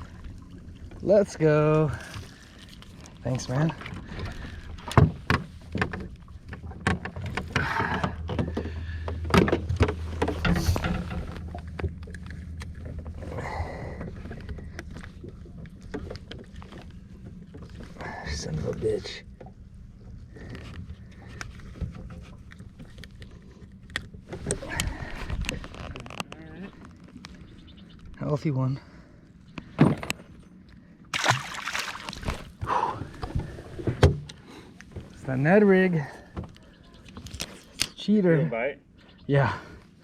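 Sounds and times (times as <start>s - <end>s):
steady low hum: 0.0s - 25.7s
rumble of wind and water: 0.0s - 40.0s
knocks and thumps against boat: 3.6s - 18.0s, 31.2s - 35.2s.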